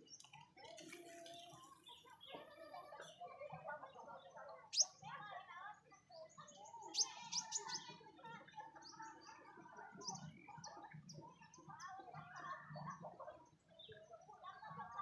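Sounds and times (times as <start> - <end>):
birds chirping: 0.0 - 3.2, 4.2 - 5.0, 6.0 - 8.1.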